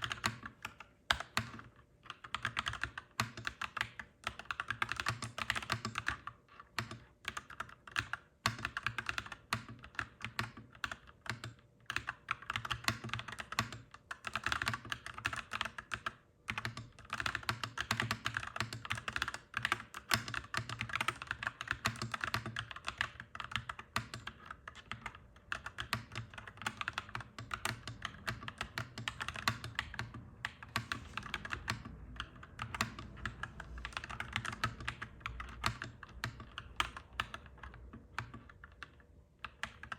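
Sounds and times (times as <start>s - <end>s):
mechanical keyboard typing: 0.0s - 39.9s
faint low hum: 22.7s - 39.9s.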